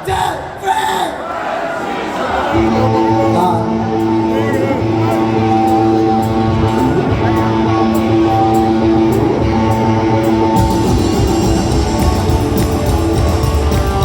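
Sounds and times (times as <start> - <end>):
electric guitar held notes: 2.5 - 14.0
rock and roll band playing: 2.5 - 14.0.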